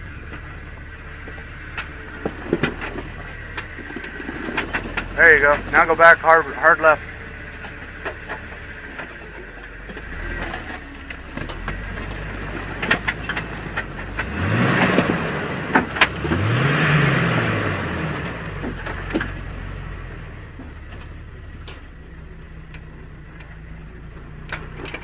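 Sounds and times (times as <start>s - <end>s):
engine running at low revs: 0.0s - 25.0s
sharp clicks and knocks: 0.3s - 6.9s, 7.5s - 16.5s.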